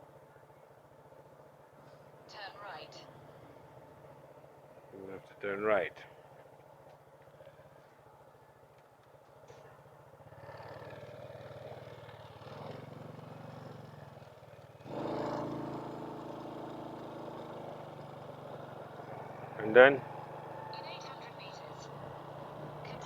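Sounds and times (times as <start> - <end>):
motorbike engine running: 9.7 - 23.0.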